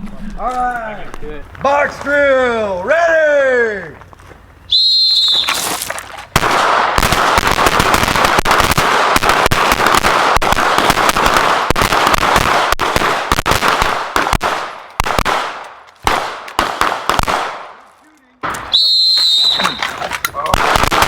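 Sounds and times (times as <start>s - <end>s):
rapid handgun fire: 6.4s - 17.8s, 20.6s - 21.0s.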